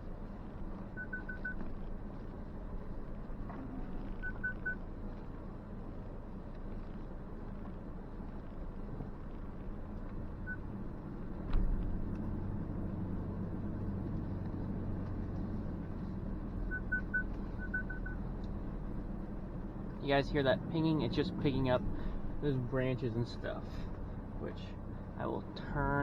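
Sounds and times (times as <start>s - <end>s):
truck rumble: 0.0s - 26.0s
parking sensor beeps: 0.9s - 1.7s, 4.1s - 4.8s, 10.4s - 10.7s, 16.6s - 18.2s.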